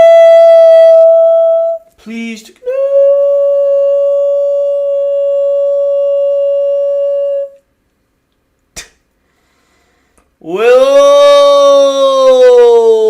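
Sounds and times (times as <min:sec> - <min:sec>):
man holding high-pitched tone: 0:00.0 - 0:07.6.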